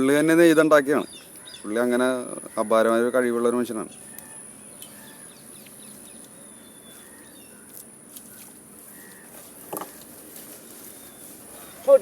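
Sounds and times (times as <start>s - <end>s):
bird chirps: 1.0s - 2.9s, 3.8s - 10.2s, 10.8s - 12.0s.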